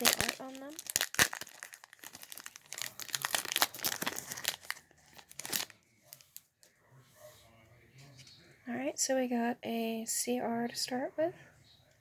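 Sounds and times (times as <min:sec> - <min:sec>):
wrapper being torn and crinkled: 0:00.0 - 0:06.4.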